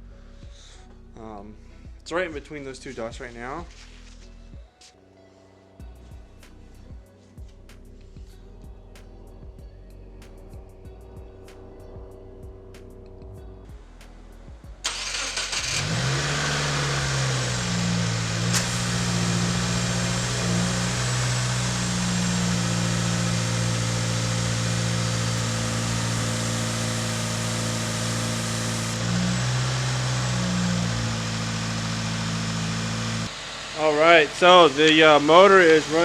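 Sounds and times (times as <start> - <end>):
car engine starting and idling: 8.9 - 36.0.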